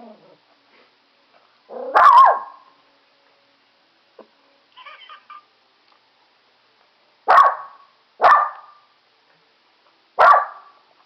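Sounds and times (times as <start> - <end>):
small dog barking: 1.7 - 2.6, 7.3 - 8.8, 10.2 - 10.8.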